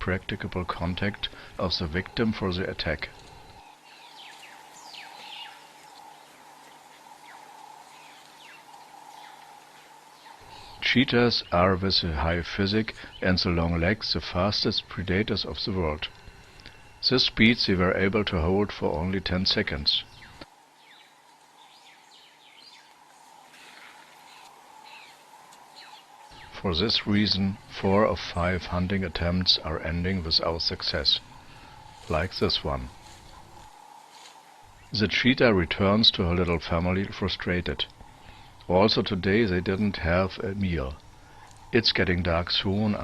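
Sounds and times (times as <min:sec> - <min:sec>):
faint outdoor drone: 0:00.0 - 0:43.0
faint steady tone: 0:00.0 - 0:43.0
quiet hiss: 0:00.0 - 0:43.0
birds whistling: 0:01.0 - 0:43.0.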